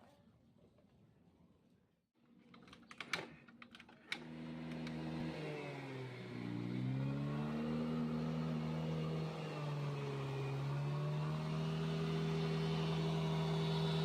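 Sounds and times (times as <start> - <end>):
scooter engine running: 4.4 - 14.0.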